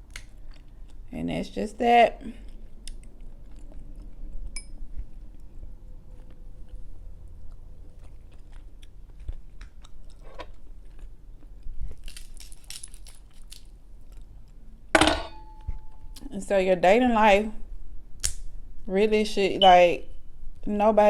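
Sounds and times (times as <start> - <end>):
person chewing food: 0.1 - 1.0, 2.4 - 14.6
small clicks and crunches: 11.8 - 14.3.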